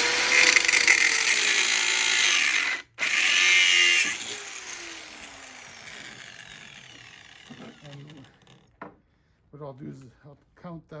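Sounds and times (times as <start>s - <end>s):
cutoff disc grinding metal: 0.0s - 8.6s.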